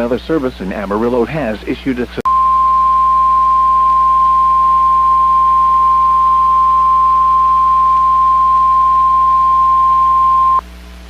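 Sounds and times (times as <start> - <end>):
steady warning alarm beep: 2.3 - 10.6.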